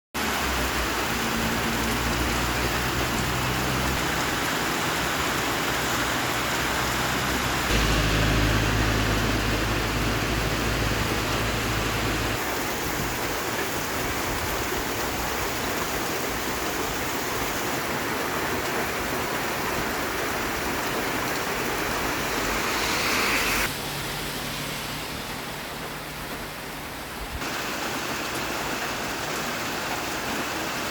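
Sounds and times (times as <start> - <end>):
steady rain hissing: 0.2 - 30.9
low rumble: 7.7 - 12.4.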